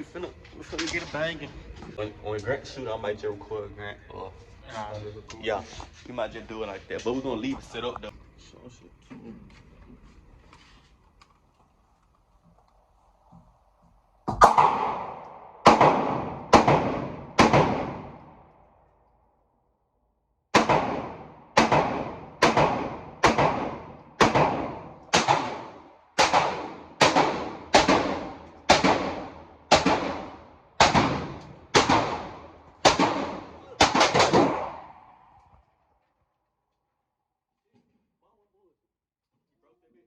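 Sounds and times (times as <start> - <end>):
gunshots with ringing echo: 14.4 - 18.6, 20.5 - 35.3.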